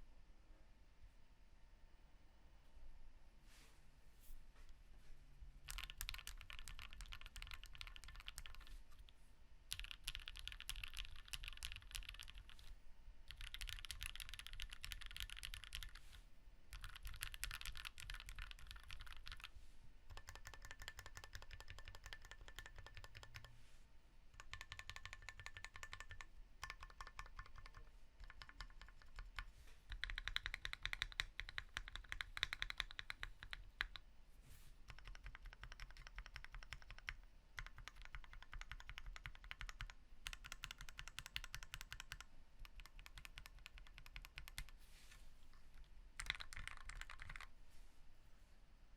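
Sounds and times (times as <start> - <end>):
mechanical keyboard typing: 5.7 - 9.0, 9.7 - 12.7, 13.3 - 16.1, 16.7 - 19.5, 20.1 - 23.5, 24.4 - 34.0, 34.9 - 44.8, 46.2 - 47.5.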